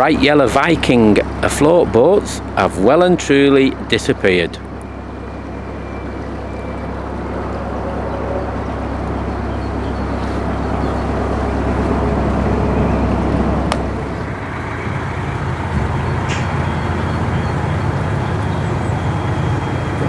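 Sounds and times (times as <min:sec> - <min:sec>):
boat diesel engine rumbling: 0:00.0 - 0:20.0.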